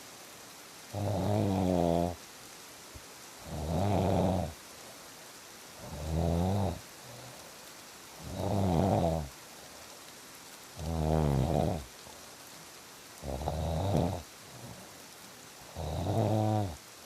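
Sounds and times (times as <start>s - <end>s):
person snoring: 0.9s - 2.2s, 3.4s - 4.6s, 5.8s - 7.3s, 8.2s - 9.3s, 10.8s - 11.9s, 13.2s - 14.9s, 15.7s - 16.8s.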